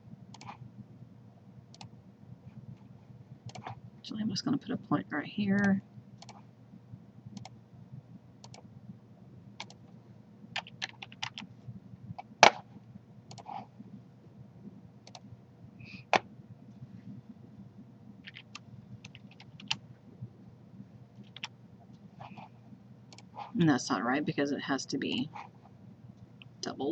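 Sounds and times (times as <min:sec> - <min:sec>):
low steady hum: 0:00.0 - 0:26.9
mouse and keyboard clicks: 0:00.3 - 0:00.6, 0:03.5 - 0:03.8, 0:05.6 - 0:06.4, 0:08.4 - 0:08.6, 0:09.6 - 0:09.8, 0:10.6 - 0:11.5, 0:13.3 - 0:13.6, 0:15.0 - 0:15.2, 0:18.2 - 0:19.8, 0:21.2 - 0:21.5.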